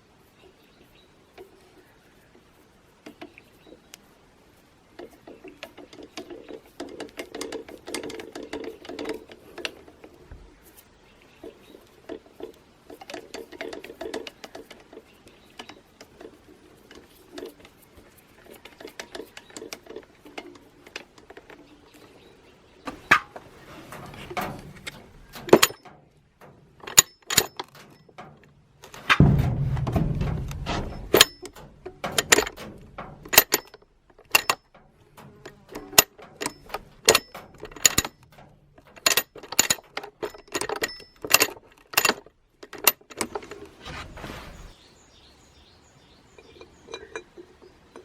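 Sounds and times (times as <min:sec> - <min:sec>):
clicking and tapping on metal parts: 0:01.3 - 0:43.8
sharp knocks: 0:24.2 - 0:33.6.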